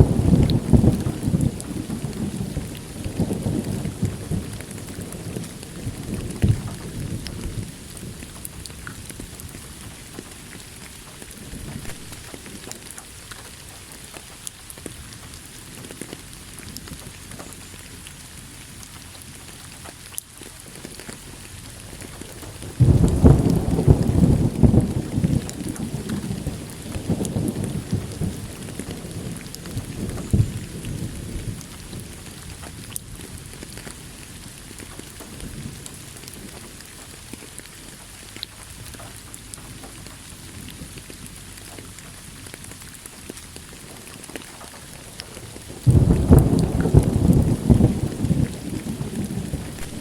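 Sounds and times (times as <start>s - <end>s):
loud thunderclap: 0.0s - 9.6s, 11.5s - 12.7s, 22.4s - 32.7s, 45.1s - 50.0s
thunder rumbling: 0.0s - 13.0s, 21.6s - 37.4s, 38.6s - 50.0s
heavy rain: 0.0s - 50.0s.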